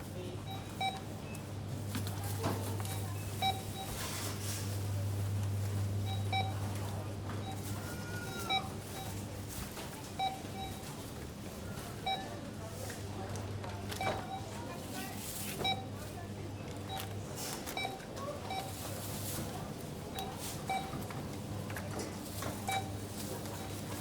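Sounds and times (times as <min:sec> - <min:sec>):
background bustle: 0:00.0 - 0:24.0
barcode scanner beeps: 0:00.5 - 0:01.5, 0:02.7 - 0:04.0, 0:05.7 - 0:06.7, 0:07.4 - 0:09.2, 0:10.2 - 0:11.0, 0:15.6 - 0:15.9, 0:17.7 - 0:18.9, 0:20.1 - 0:21.1, 0:22.6 - 0:23.8.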